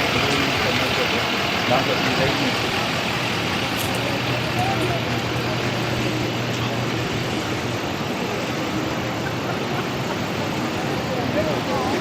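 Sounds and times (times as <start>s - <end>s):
faint voices: 0.0s - 12.0s
low engine hum: 0.0s - 12.0s
vehicle traffic: 0.0s - 12.0s.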